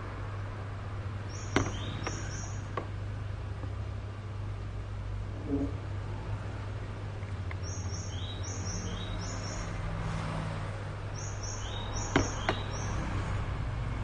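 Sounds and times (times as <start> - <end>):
bird chirping: 1.2 - 2.8, 7.6 - 10.0, 11.1 - 13.2.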